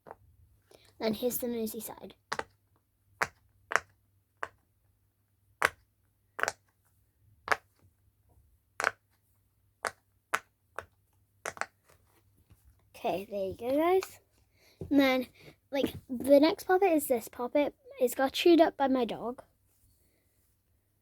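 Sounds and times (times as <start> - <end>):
pop-it toy bubbles popping: 3.2 - 4.6, 5.6 - 6.7, 8.8 - 9.1, 9.8 - 11.8.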